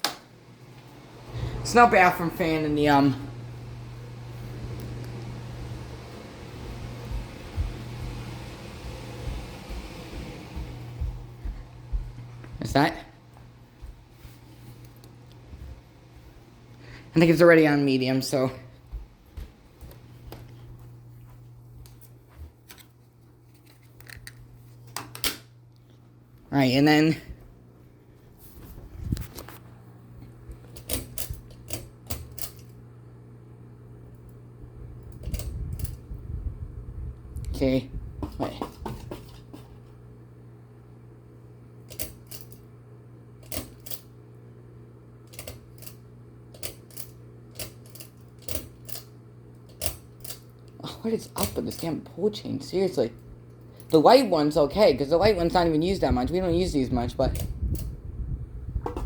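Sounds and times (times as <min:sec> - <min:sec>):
ceiling fan motor hum: 0:00.0 - 0:59.0.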